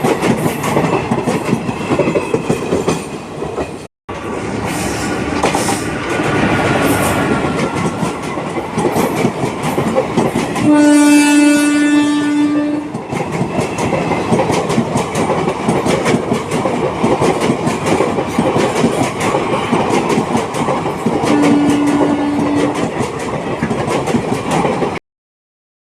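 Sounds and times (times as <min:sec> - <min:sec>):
train running noise: 0:00.0 - 0:25.0
train horn blasts: 0:10.6 - 0:13.0, 0:21.3 - 0:22.9
wheels clicking over rail joints: 0:12.9 - 0:25.0.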